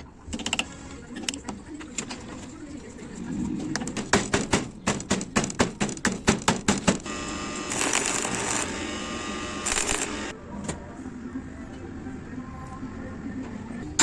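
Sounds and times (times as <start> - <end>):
sharp rapid clicks: 7.7 - 8.7, 9.6 - 10.3.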